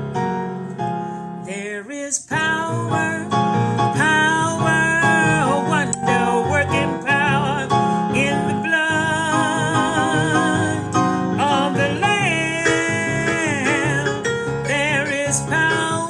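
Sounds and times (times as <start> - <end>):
guitar accompaniment: 5.8 - 8.0.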